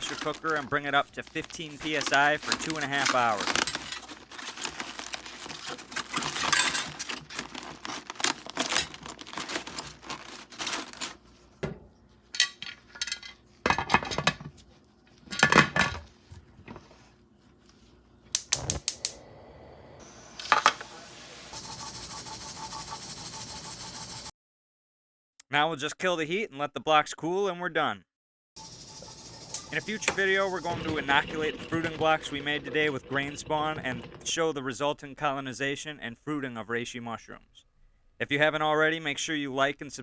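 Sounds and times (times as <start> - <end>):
metal pressure cooker clattering: 29.6 - 34.3.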